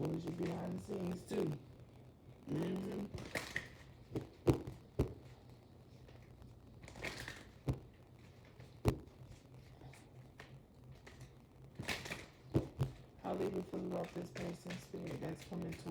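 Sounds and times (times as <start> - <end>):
card deck taps: 4.1 - 5.3.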